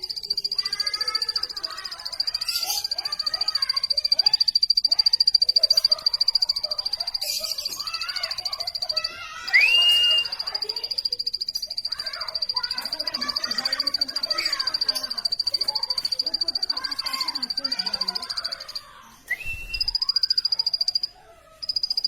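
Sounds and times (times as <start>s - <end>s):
bird chirping: 0.0s - 22.0s
high fast-pulsing bird trill: 0.0s - 22.0s
rising bird whistle: 9.4s - 10.6s, 19.2s - 21.0s.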